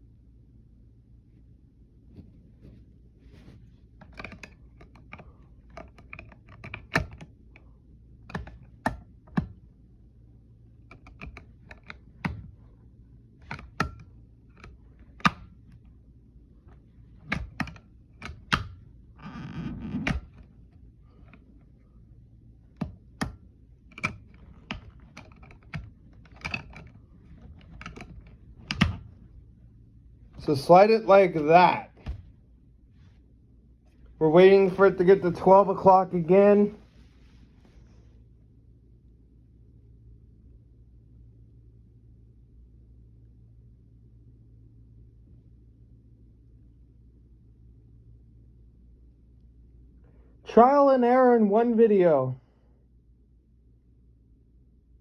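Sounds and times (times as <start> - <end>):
plastic button clicks and taps: 8.3 - 9.6, 10.9 - 12.6, 13.4 - 15.8, 17.2 - 18.8.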